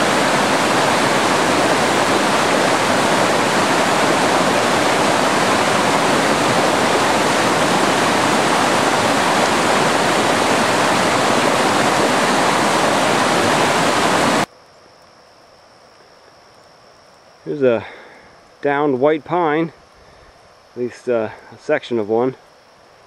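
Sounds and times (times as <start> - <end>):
rush of flowing water: 0.0 - 14.5.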